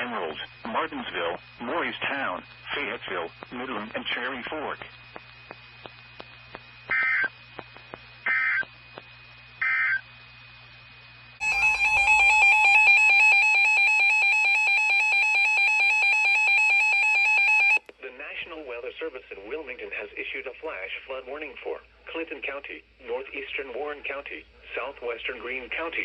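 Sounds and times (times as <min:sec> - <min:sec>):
screeching data bursts: 0:06.9 - 0:07.3, 0:08.2 - 0:08.7, 0:09.6 - 0:10.0, 0:11.4 - 0:17.8
two-tone attention signal: 0:11.4 - 0:17.8.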